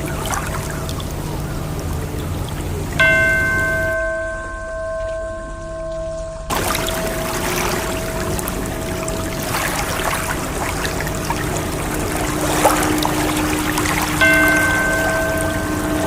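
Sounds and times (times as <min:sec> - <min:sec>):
rushing fizzing water: 0:00.0 - 0:04.0, 0:06.5 - 0:16.0
faint bell-like ringing tone: 0:03.0 - 0:16.0.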